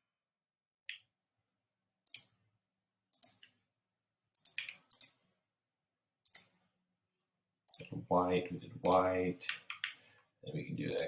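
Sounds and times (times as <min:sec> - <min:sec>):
computer mouse clicking: 0:02.1 - 0:02.3, 0:03.1 - 0:03.6, 0:04.4 - 0:05.2, 0:06.3 - 0:06.5.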